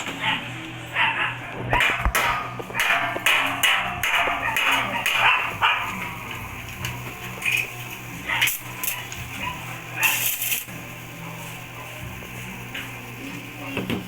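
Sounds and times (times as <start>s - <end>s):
steady low hum: 0.0s - 14.0s
dog barking: 0.1s - 3.2s, 4.0s - 6.0s, 8.2s - 10.2s.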